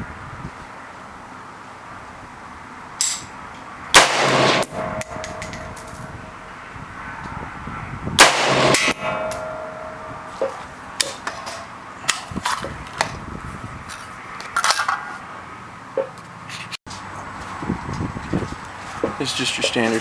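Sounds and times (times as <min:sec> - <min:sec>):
rifle shot ringing out: 0:04.0 - 0:06.0, 0:08.2 - 0:10.0
metallic clicks and clanks: 0:04.4 - 0:06.2, 0:08.5 - 0:11.7.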